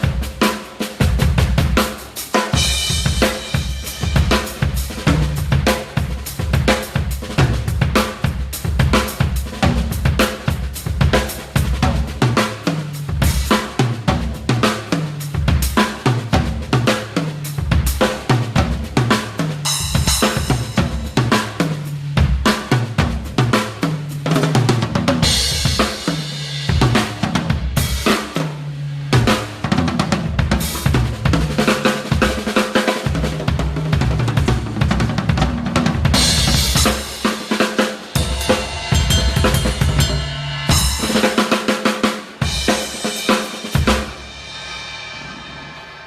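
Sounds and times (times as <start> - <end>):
drum kit grooves and tom fills: 0.0 - 46.0
crash cymbals struck: 36.4 - 41.7, 42.5 - 46.0.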